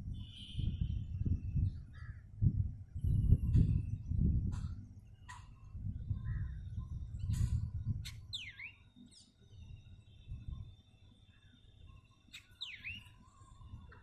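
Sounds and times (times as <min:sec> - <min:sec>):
songbirds chipping: 0:03.0 - 0:14.0.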